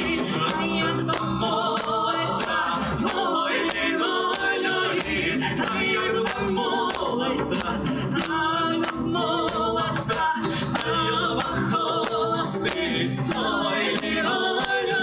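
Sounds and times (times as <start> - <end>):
folk group singing: 0.0 - 15.0
steady percussive beat: 0.0 - 15.0.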